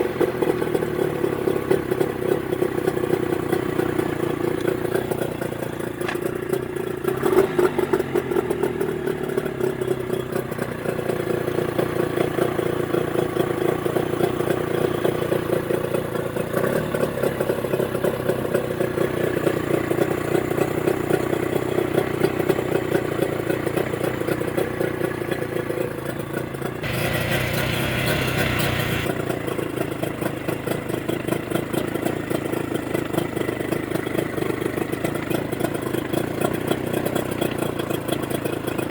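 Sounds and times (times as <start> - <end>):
outboard motor running: 0.0 - 38.9
hiss: 26.8 - 29.1.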